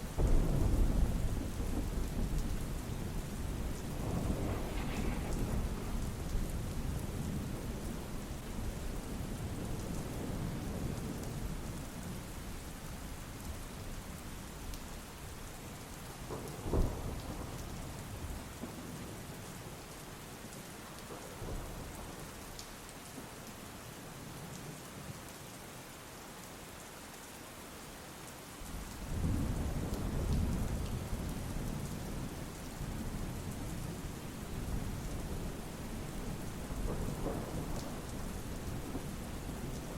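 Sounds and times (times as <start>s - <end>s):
steady rain: 0.0s - 39.9s
rolling thunder rumble: 0.1s - 11.9s, 29.0s - 39.9s
thunder crack: 0.2s - 7.0s, 36.8s - 39.1s.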